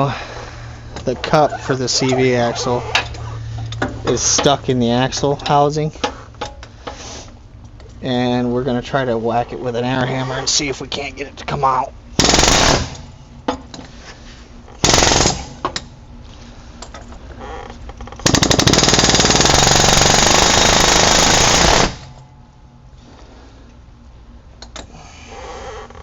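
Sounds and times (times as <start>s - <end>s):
pneumatic air hammer hammering: 18.2s - 22.2s.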